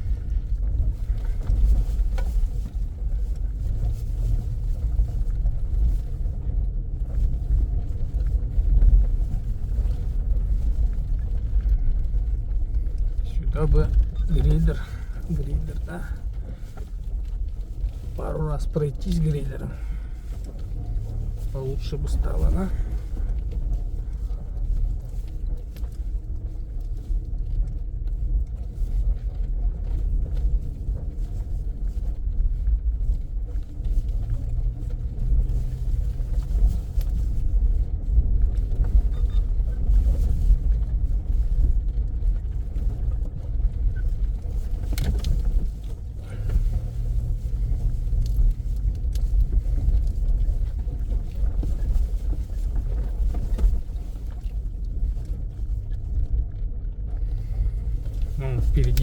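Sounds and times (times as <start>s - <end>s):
car rumbling on rough road: 0.0s - 59.0s.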